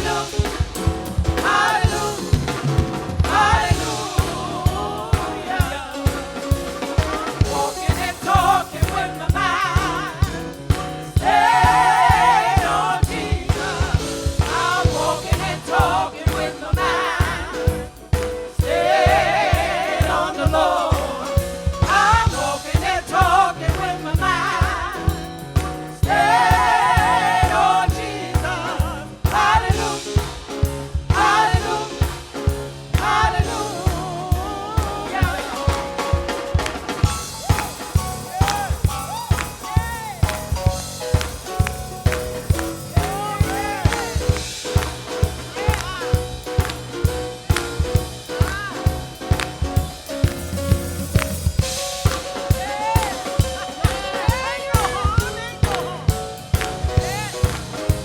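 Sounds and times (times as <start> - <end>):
voices singing with vibrato: 0.0 - 47.6, 51.6 - 58.0
bass: 0.0 - 58.0
steady drum beat: 0.0 - 58.0.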